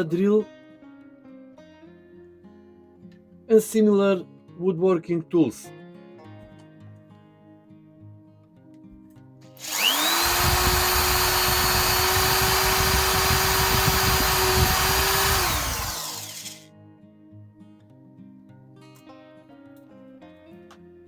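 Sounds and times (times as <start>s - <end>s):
quiet guitar music: 0.0s - 9.6s, 16.6s - 21.0s
electric drill whining: 9.6s - 16.7s.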